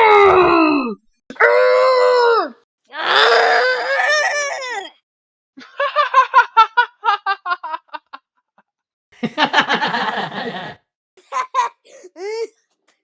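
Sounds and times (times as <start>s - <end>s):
long wavering cartoon cry: 0.0s - 4.9s
staccato cartoon laugh: 5.6s - 8.3s, 9.2s - 11.8s.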